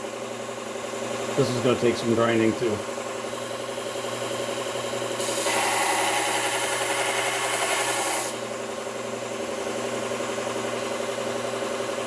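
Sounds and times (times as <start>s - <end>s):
belt grinder grinding steel: 5.2s - 8.4s
belt grinder motor humming: 5.2s - 8.4s.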